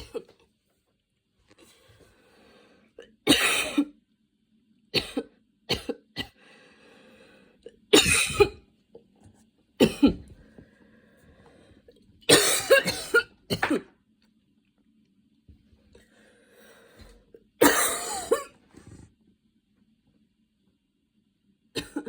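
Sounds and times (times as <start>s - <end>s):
woman coughing: 0.0s - 0.3s, 3.3s - 3.9s, 5.0s - 6.4s, 8.0s - 8.6s, 9.8s - 10.3s, 12.3s - 13.9s, 17.6s - 19.0s, 21.8s - 22.0s.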